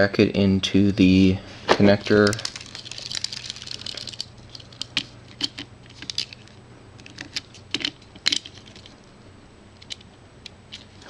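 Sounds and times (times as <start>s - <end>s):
cable rustle: 1.9s - 9.0s
small clicks and ticks: 2.1s - 6.5s.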